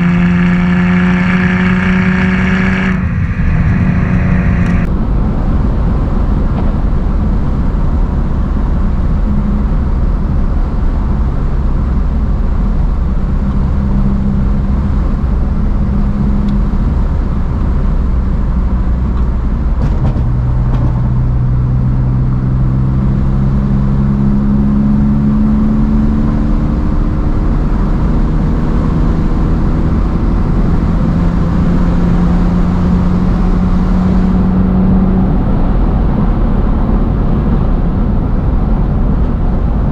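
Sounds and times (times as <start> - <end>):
car engine running: 0.0 - 25.7
road and wind noise: 0.0 - 39.9.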